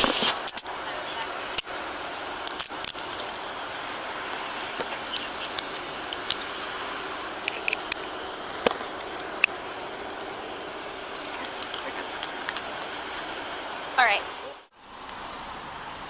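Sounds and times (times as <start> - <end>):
steady background hiss: 0.0 - 16.0
metallic clicks and jingles: 0.3 - 3.7.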